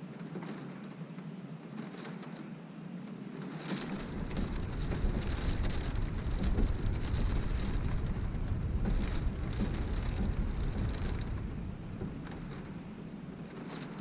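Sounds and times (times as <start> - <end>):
rain beating on a window: 0.0 - 14.0
gusting wind rumble: 3.2 - 14.0.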